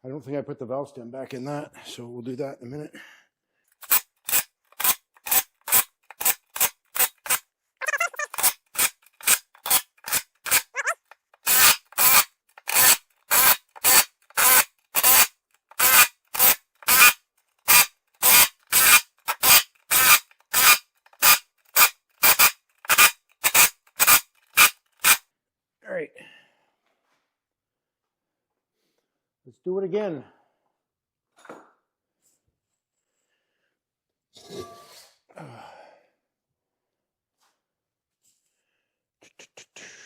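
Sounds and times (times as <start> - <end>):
hand tool rasping strokes: 3.8 - 25.2.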